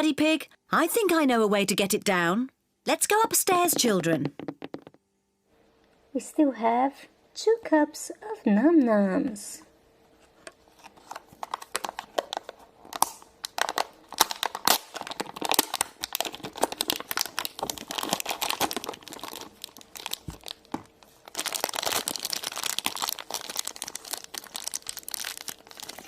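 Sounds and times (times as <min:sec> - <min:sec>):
plastic packaging crumpled and torn: 0:10.7 - 0:26.0.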